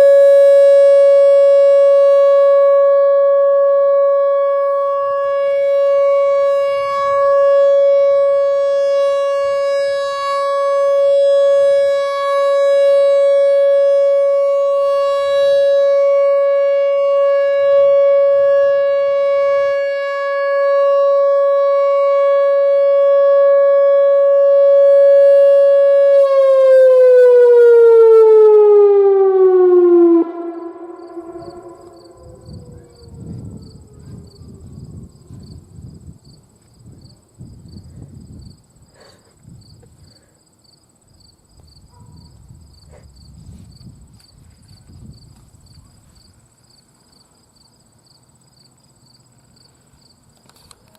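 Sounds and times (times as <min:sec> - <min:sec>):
warning siren wailing: 0:00.0 - 0:36.2.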